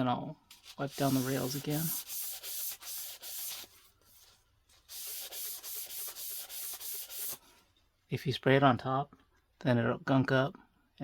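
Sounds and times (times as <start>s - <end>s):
paper towel rubbing on metal rails: 0.7s - 3.8s.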